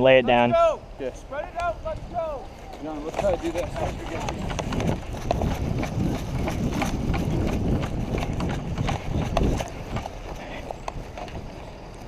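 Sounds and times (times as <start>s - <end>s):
footsteps: 1.3s - 12.0s
gear knocking and rattling: 2.8s - 11.7s.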